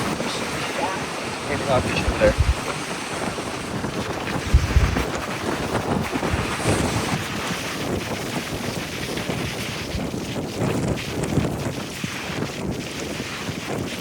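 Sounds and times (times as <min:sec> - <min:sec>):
surf rushing: 0:00.0 - 0:10.0
wind buffeting microphone: 0:00.0 - 0:14.0.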